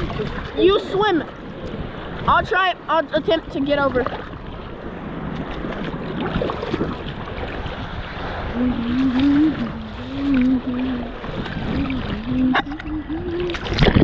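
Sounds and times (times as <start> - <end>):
seawater sloshing around boat: 0.0 - 14.0
wind noise on microphone: 0.0 - 14.0
low wavering drone: 8.3 - 14.0.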